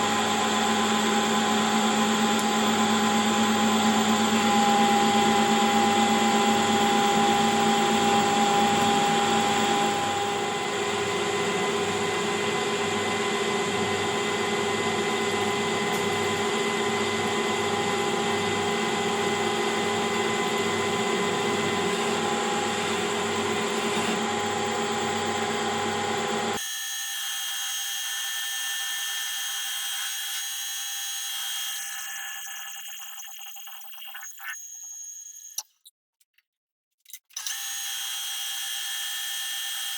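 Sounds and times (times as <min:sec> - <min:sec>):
metal lathe running: 0:00.0 - 0:10.6.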